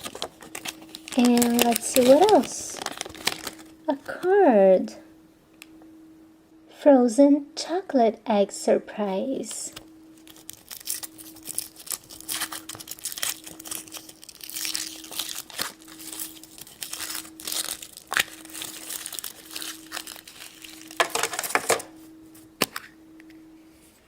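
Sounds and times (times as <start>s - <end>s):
foil wrapper crinkling and tearing: 0.0s - 4.2s, 9.7s - 21.9s.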